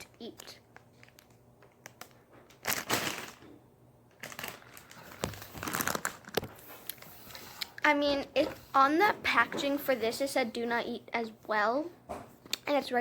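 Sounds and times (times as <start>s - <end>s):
plastic packaging crinkling: 0.0s - 7.2s.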